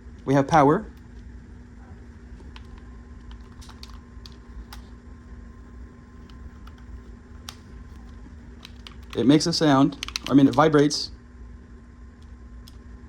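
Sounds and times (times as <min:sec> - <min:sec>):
steady low hum: 0:00.0 - 0:13.0
controller buttons clicking: 0:09.9 - 0:10.7.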